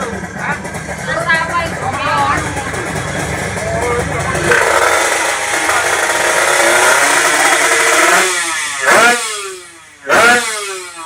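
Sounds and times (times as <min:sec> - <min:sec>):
motorcycles revving loud: 0:00.0 - 0:11.0.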